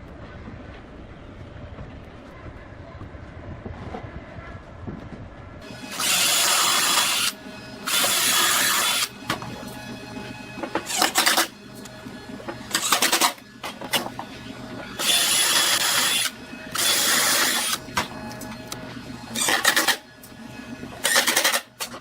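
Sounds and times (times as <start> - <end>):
small power tool bursts: 5.7 - 9.1.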